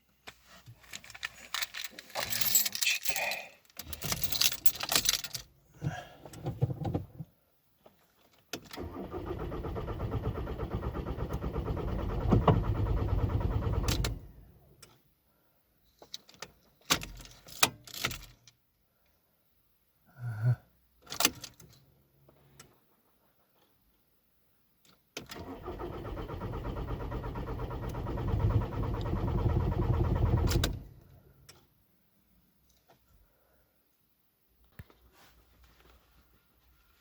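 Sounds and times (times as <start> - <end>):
keys jangling: 1.0 - 5.4
diesel engine cranking: 8.8 - 14.3, 25.4 - 31.1.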